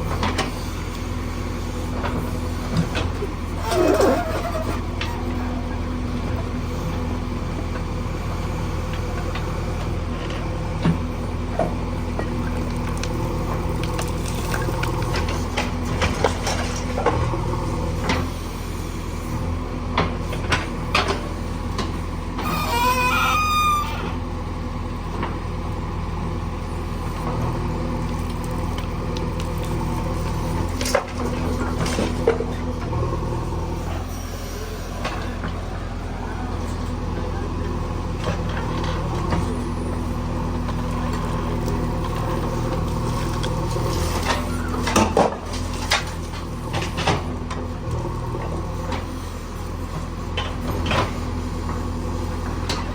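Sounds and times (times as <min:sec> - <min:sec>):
diesel engine running: 0:00.0 - 0:52.9
short wavering squeal: 0:03.6 - 0:04.8, 0:22.4 - 0:24.2.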